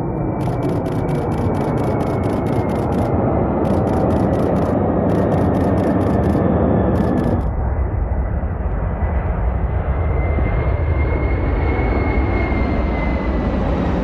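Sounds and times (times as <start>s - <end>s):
aircraft engines rumbling: 0.0s - 14.0s
thin whine: 0.3s - 7.5s.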